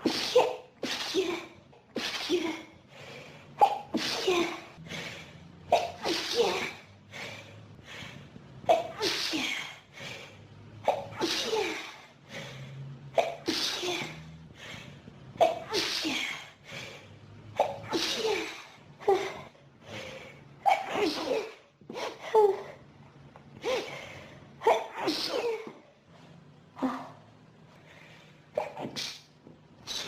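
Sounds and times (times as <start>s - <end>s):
person sneezing: 0.0s - 2.8s, 3.6s - 4.8s, 5.7s - 6.9s, 8.7s - 9.8s, 10.8s - 12.1s, 13.2s - 14.2s, 15.4s - 16.5s, 17.6s - 19.5s, 20.6s - 22.8s, 24.6s - 25.8s, 28.5s - 30.0s.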